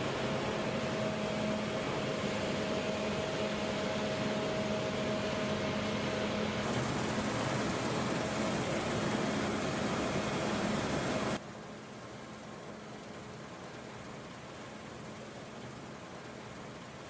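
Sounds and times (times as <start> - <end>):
combine harvester running: 0.0 - 11.4
mechanical whine: 0.0 - 11.4.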